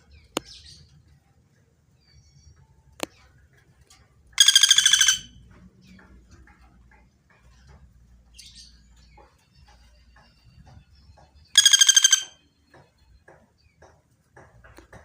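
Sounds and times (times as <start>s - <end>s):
woodpecker rattling call: 4.3s - 15.0s.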